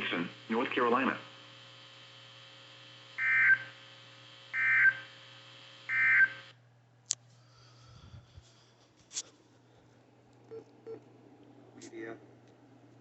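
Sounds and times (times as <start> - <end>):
electrical hum: 0.0 - 13.0
two-tone data bursts: 3.2 - 3.8, 4.5 - 5.1, 5.9 - 6.5.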